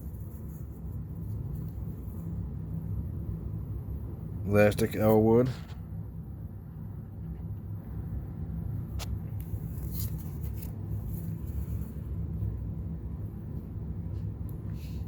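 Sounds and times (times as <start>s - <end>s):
steady low hum: 0.0s - 15.0s
trading cards flipped by hand: 9.0s - 11.2s.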